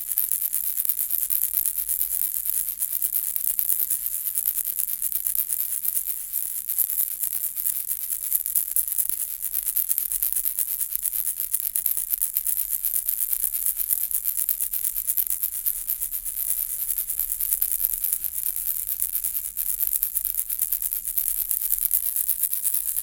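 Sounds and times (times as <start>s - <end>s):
baby's rattle toy shaken: 10.8s - 23.0s.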